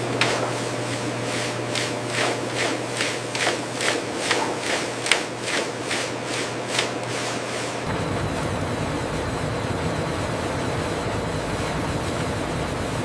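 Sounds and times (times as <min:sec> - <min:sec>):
machinery hum: 0:00.0 - 0:13.0
machine swishing strokes: 0:00.2 - 0:12.9
deep mechanical rumble: 0:07.8 - 0:13.0.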